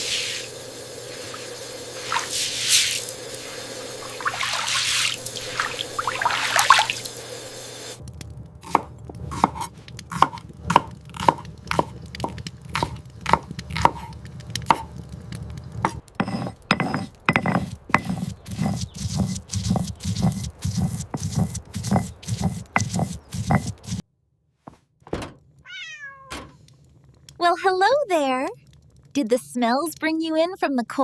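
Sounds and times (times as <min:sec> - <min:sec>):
running water: 0:00.0 - 0:08.0
knife chopping on cutting board: 0:08.7 - 0:14.1, 0:15.9 - 0:24.0.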